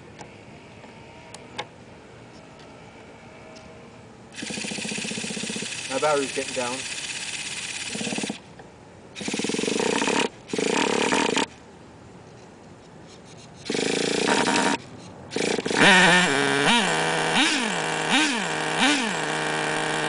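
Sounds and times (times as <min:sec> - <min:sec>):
small engine being cranked: 0:04.3 - 0:08.4, 0:09.2 - 0:11.5, 0:13.6 - 0:20.0
small engine revving and idling: 0:04.3 - 0:08.4, 0:09.2 - 0:11.5, 0:13.7 - 0:20.0.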